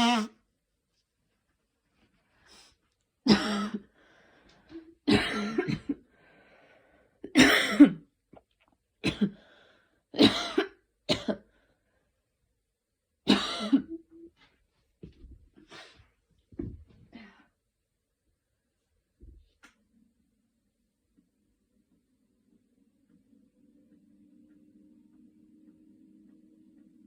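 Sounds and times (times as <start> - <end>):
girl coughing: 3.3 - 3.9, 5.1 - 6.0, 7.3 - 8.1, 9.0 - 9.4, 10.2 - 11.5, 13.3 - 14.0.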